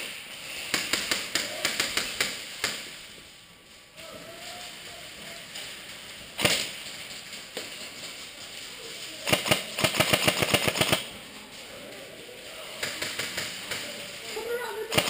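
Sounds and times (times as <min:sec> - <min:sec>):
airsoft gun shots: 0:00.7 - 0:02.9, 0:06.4 - 0:06.7.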